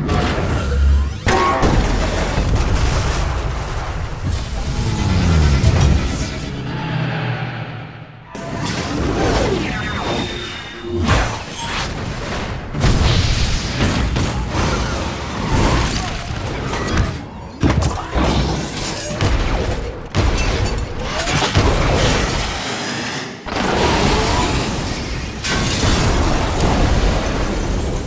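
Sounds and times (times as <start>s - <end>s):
gliding tones: 4.7s - 11.7s.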